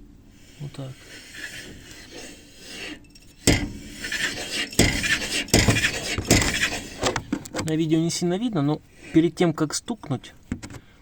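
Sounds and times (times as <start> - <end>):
drivetrain rubbing and scraping: 0.4 - 10.4
sharp gearbox knocks: 4.8 - 6.7.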